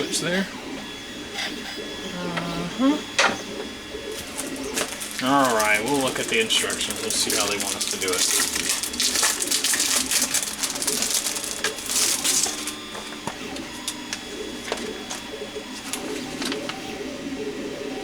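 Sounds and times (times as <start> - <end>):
paper rustling: 4.1 - 17.0.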